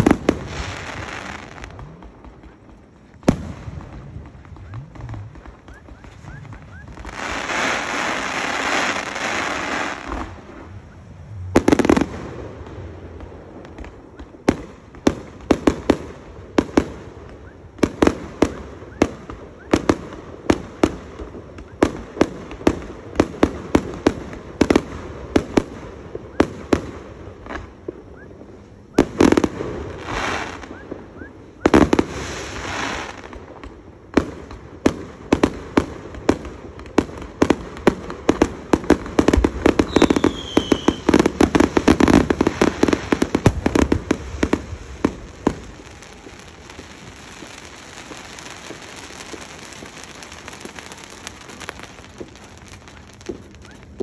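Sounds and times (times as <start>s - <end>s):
fireworks bangs: 0.0s - 54.0s
fireworks crackle: 0.0s - 54.0s
rushing firework bursts: 0.0s - 54.0s
falling whistle: 5.6s - 7.2s, 39.9s - 41.1s.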